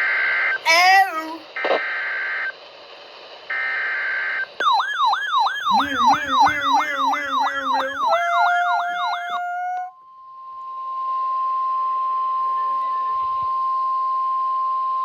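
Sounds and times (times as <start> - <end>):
electronic siren alarm: 4.6 - 10.0
steady alert tone: 5.7 - 9.8.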